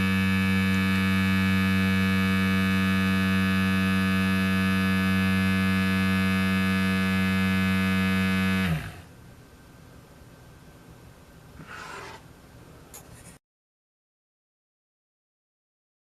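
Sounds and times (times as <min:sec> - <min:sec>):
hair clipper buzzing: 0:00.0 - 0:09.0.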